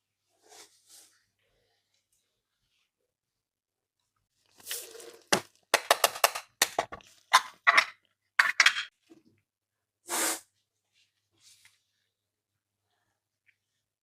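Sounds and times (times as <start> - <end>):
plastic toy pieces clicking: 5.8 - 6.8.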